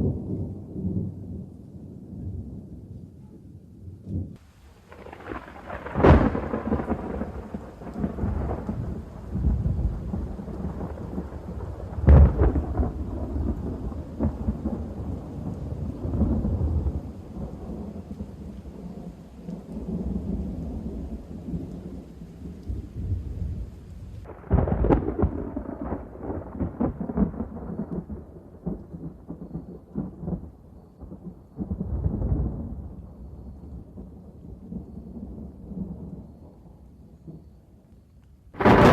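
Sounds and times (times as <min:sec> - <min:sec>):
low thunder rumble: 0:00.0 - 0:38.9
thunder clap: 0:04.1 - 0:33.2, 0:38.6 - 0:38.9.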